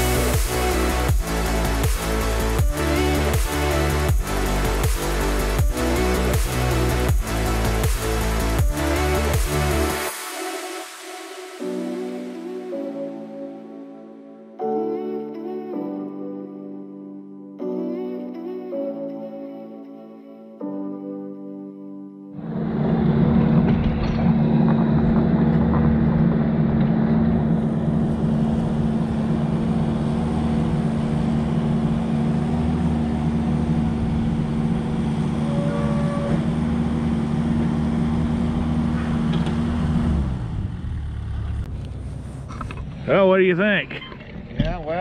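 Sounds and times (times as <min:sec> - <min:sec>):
vehicle engine running: 0:00.0 - 0:10.1, 0:22.4 - 0:44.6.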